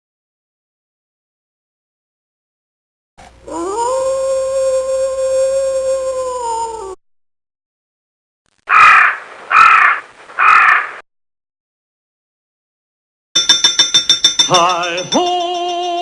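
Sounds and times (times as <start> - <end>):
harsh cawing calls: 8.7 - 11.0.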